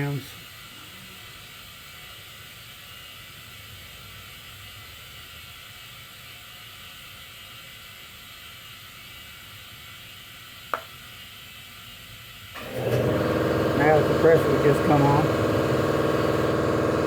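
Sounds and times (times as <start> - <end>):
compressed air hissing: 12.6 - 17.0.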